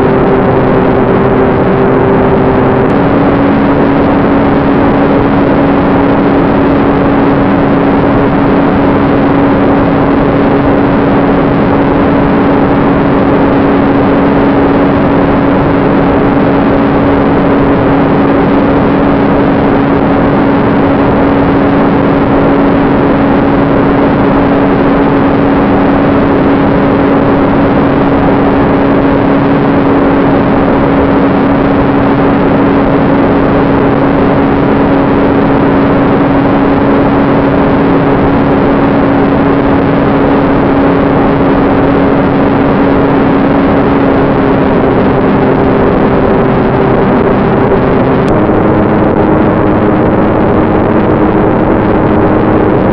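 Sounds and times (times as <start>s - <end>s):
ducted fan motor humming: 0.0s - 52.9s
rushing air noise: 0.0s - 52.9s.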